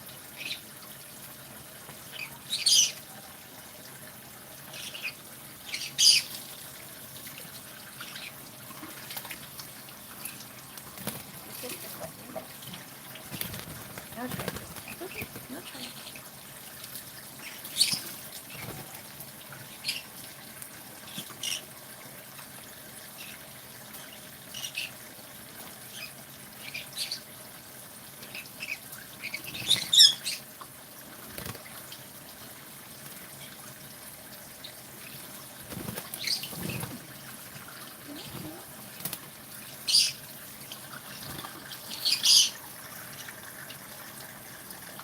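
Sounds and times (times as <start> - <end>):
birds splashing in water: 0.0 - 44.9
wing fluttering: 10.3 - 16.3, 17.4 - 19.2, 31.2 - 31.8, 35.5 - 39.3, 40.8 - 42.6.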